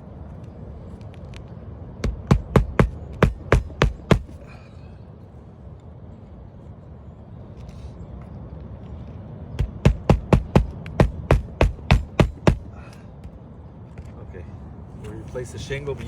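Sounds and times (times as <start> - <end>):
hammer striking roofing nails: 2.0 - 4.4, 9.6 - 12.9.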